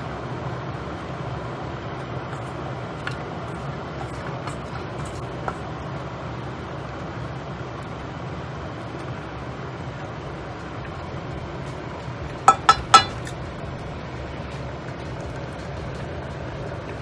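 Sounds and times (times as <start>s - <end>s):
utensil clinking against pot: 12.3s - 13.5s.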